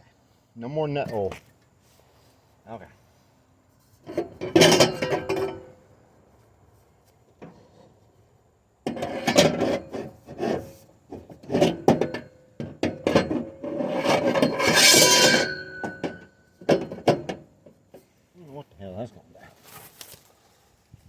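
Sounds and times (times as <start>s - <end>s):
hand tools scraping metal and wood: 3.8s - 5.8s, 8.9s - 18.2s.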